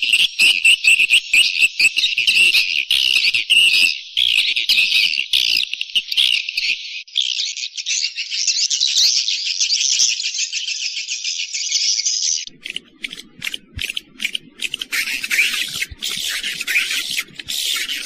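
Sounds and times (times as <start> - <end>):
swiftlet twittering: 12.5 - 18.0.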